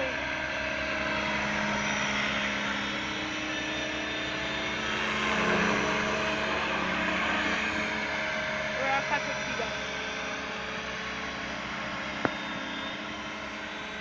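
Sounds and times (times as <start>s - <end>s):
model helicopters droning: 0.0s - 14.0s.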